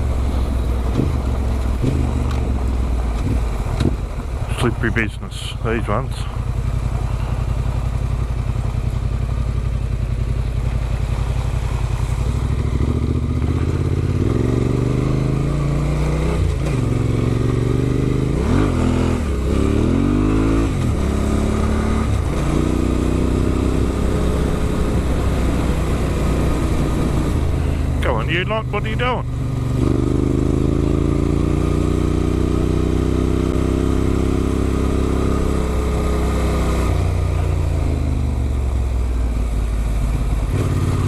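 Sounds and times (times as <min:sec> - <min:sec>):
motorcycle engine revving: 0:00.0 - 0:04.9, 0:05.7 - 0:41.0.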